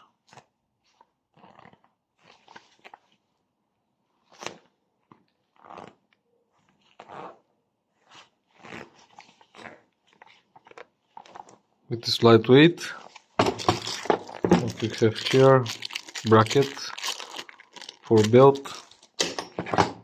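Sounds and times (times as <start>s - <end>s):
packaging rustling: 13.0s - 19.4s.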